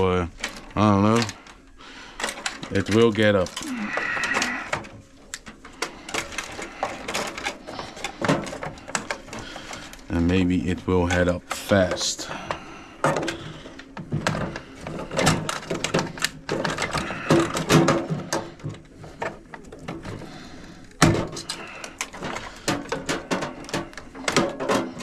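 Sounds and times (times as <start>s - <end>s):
hand tools clicking and clattering: 0.0s - 25.0s.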